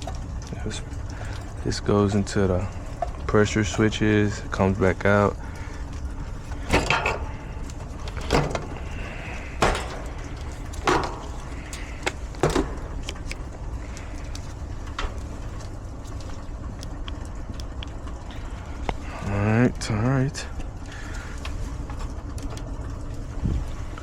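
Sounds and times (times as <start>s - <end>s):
steady low rumble: 0.0s - 24.0s
tools clattering in a panel: 6.5s - 15.7s.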